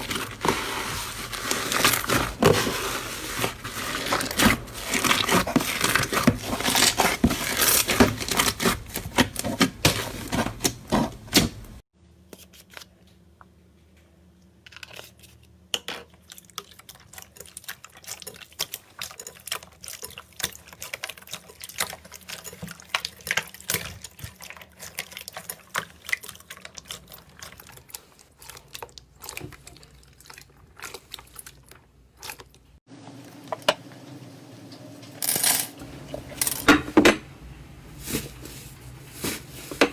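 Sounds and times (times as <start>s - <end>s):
hands squishing slime: 16.2s - 32.6s.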